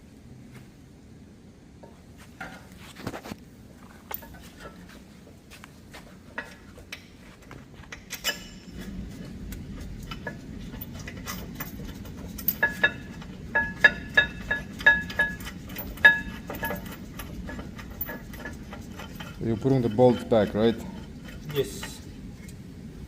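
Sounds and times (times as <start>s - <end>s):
metal tools clinking: 4.0s - 4.8s, 7.9s - 9.0s, 9.7s - 22.0s.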